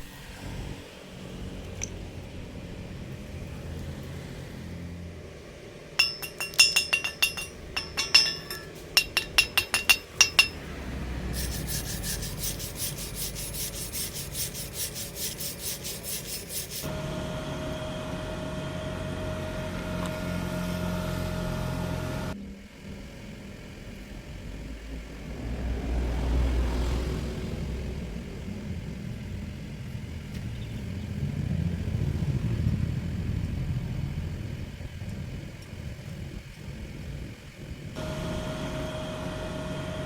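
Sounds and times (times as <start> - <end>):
motor hum: 0.0 - 40.0
sharp taps on steel: 6.0 - 10.6
fast scraping on metal: 6.0 - 10.7, 11.3 - 16.9.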